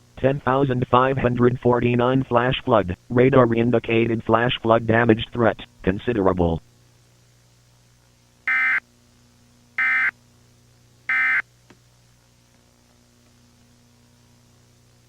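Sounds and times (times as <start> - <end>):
faint steady hum: 0.0 - 15.0
digital data bursts: 9.8 - 10.1, 11.1 - 11.4.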